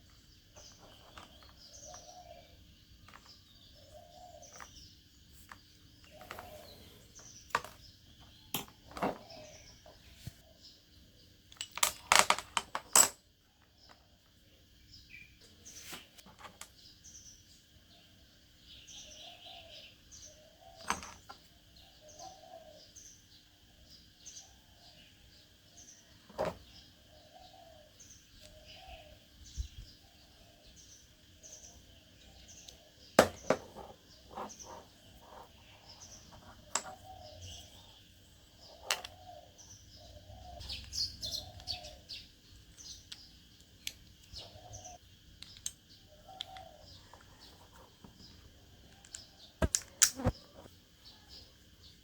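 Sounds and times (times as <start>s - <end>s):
bird chirping: 0.0s - 11.5s, 13.4s - 52.0s.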